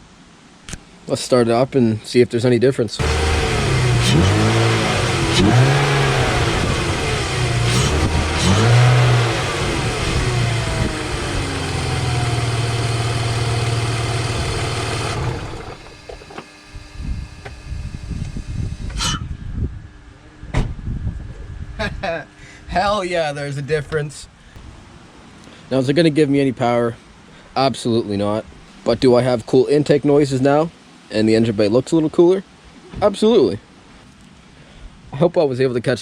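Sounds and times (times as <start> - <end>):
car engine revving: 3.0 - 16.7
air intake noise: 3.0 - 19.3.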